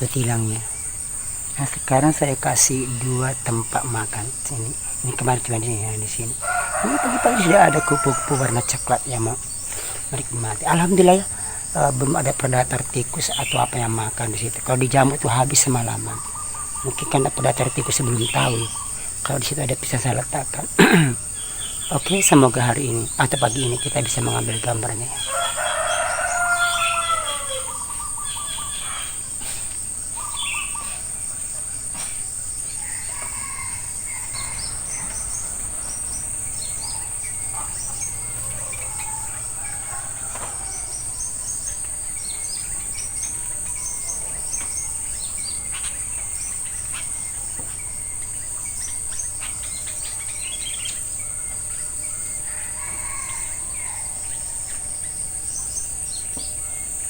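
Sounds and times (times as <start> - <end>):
high-pitched insect drone: 0.0 - 57.0
small birds chirping: 0.0 - 57.0
rooster crowing: 5.2 - 19.3, 20.0 - 29.4, 30.2 - 57.0.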